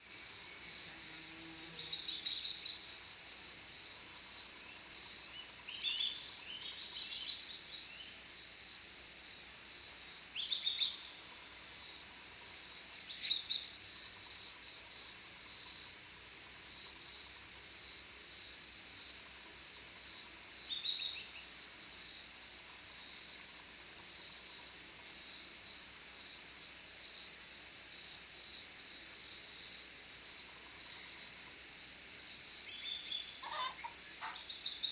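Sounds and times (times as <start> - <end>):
falling bird calls: 32.8 - 34.9.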